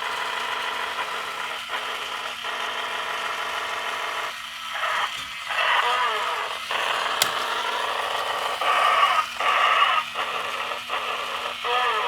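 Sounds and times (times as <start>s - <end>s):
sharp click: 7.1s - 7.8s.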